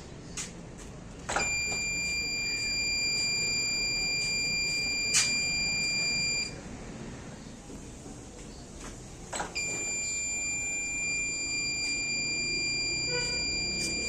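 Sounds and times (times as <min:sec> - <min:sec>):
high-pitched alarm buzzer tone: 0:01.3 - 0:06.6, 0:09.6 - 0:14.0.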